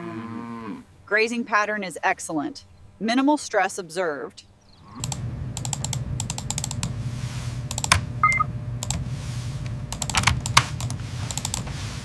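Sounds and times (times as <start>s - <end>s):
steady low hum: 4.6s - 12.0s.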